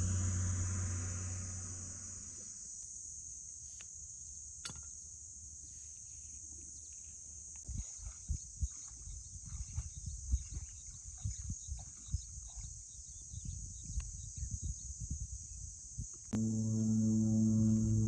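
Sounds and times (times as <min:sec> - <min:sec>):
low thumps and rumbles: 0:00.0 - 0:02.3.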